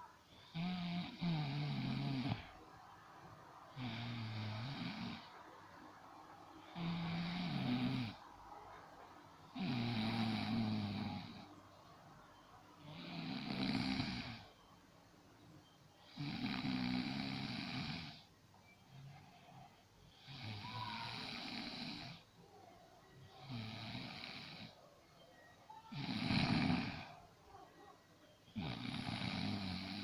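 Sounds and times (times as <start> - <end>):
woman snoring: 0.3 - 2.6, 3.7 - 5.4, 6.6 - 8.2, 9.6 - 11.5, 12.8 - 14.7, 16.0 - 18.2, 20.0 - 22.3, 23.3 - 24.8, 25.8 - 27.2, 28.5 - 30.0.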